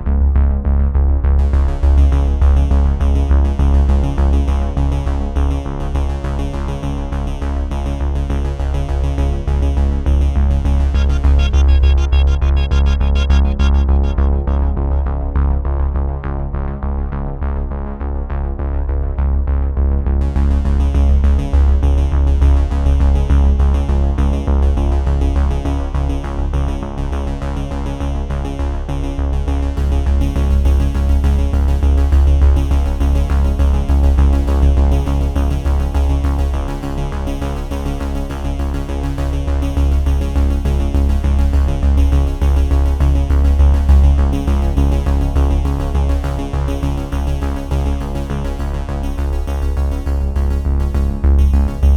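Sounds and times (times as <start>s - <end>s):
electronic synthesizer music: 10.6s - 15.8s, 51.4s - 51.9s.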